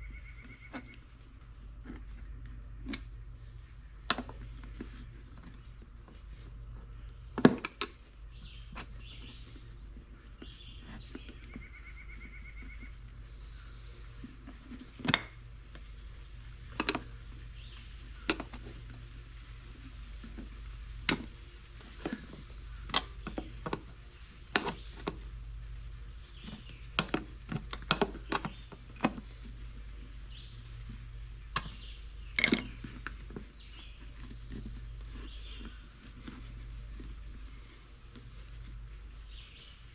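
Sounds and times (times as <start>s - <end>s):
steady low hum: 0.0s - 39.9s
clicks and knocks of tire fitting: 26.4s - 29.5s.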